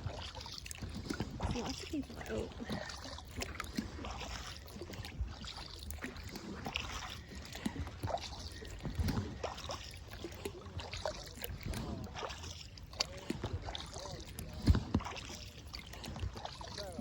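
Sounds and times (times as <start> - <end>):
paddle splashing in water: 0.0 - 17.0
water dripping off paddle: 0.0 - 17.0.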